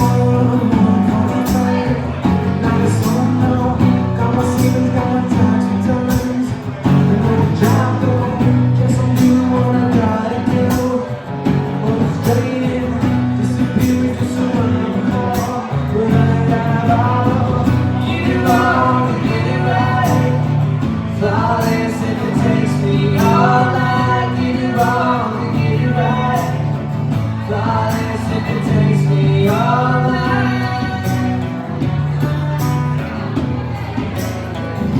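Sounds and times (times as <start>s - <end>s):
person singing: 0.0s - 34.2s
drums beat: 0.0s - 34.9s
guitar: 0.0s - 34.9s.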